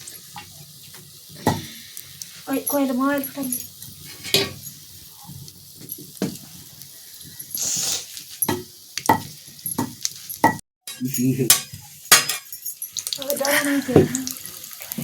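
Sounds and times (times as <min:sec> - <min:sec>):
kitchen utensils knocking and clicking: 0:02.7 - 0:04.6, 0:08.4 - 0:14.2
brief hiss: 0:07.6 - 0:08.2.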